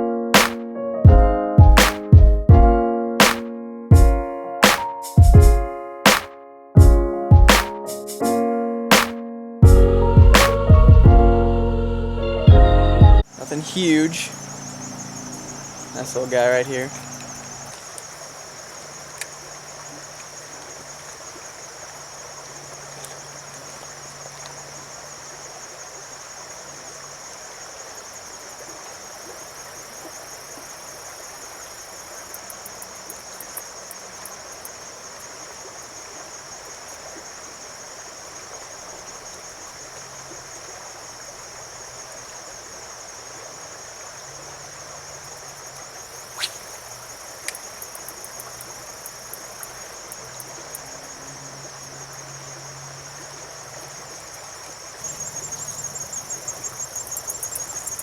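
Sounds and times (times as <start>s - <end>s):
insects trilling: 11.9s - 58.0s
creek water rushing: 13.2s - 58.0s
light ticks: 19.1s - 19.4s, 20.1s - 20.4s, 23.0s - 23.2s, 47.4s - 50.9s.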